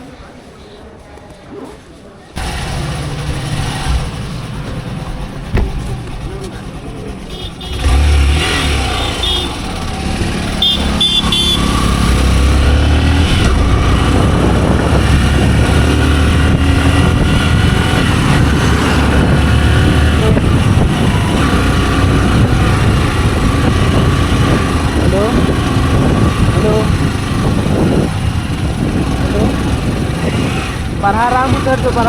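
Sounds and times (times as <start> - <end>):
motorcycle engine running: 2.4 - 32.0
road and wind noise: 2.4 - 32.0
short horn beeps: 8.8 - 9.7, 10.6 - 11.8.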